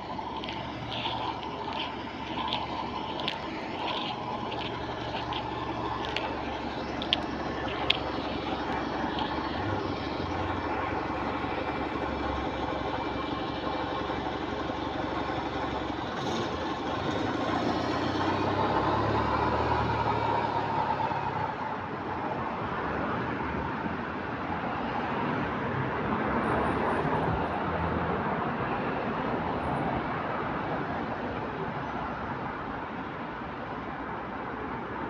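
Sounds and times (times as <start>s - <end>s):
sharp clicks: 0.0s - 15.7s
bus engine and road noise: 0.0s - 35.0s.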